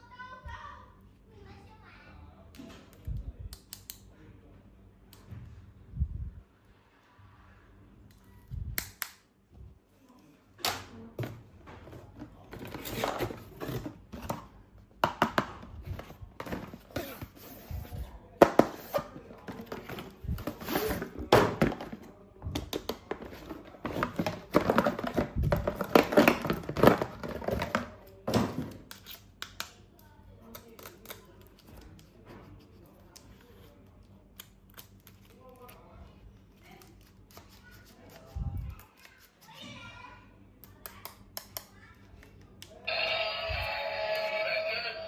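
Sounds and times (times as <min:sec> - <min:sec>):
plastic toys being handled: 0:11.2 - 0:29.7
packaging rustling: 0:11.9 - 0:14.5, 0:15.8 - 0:22.1, 0:23.0 - 0:27.9.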